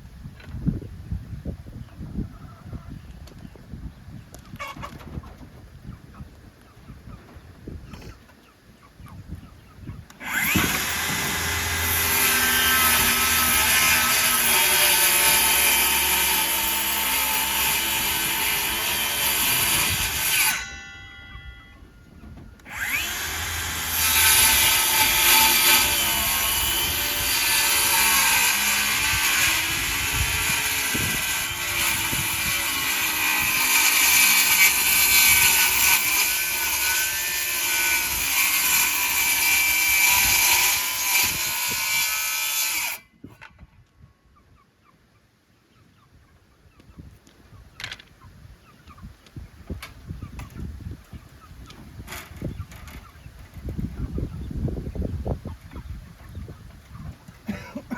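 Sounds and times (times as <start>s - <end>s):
power drill running under load: 10.2s - 14.5s.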